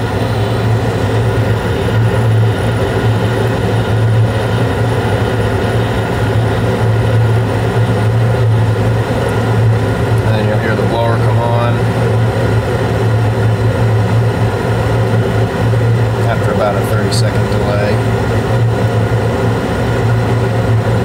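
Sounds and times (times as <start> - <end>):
gas furnace running: 0.0 - 21.0.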